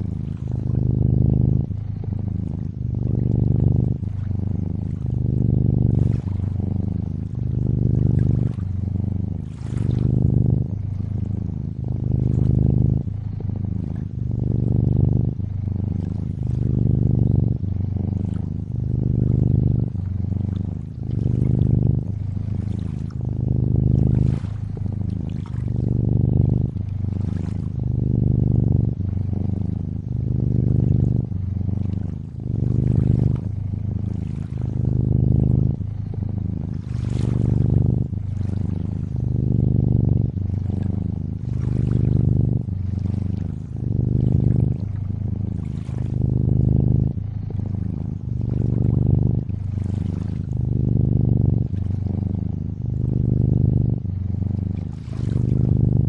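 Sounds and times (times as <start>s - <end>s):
cat purring: 0.0s - 56.0s
water trickling and lapping: 2.4s - 14.2s, 16.0s - 28.1s, 31.8s - 39.4s, 40.6s - 46.7s, 47.4s - 50.7s, 54.6s - 56.0s.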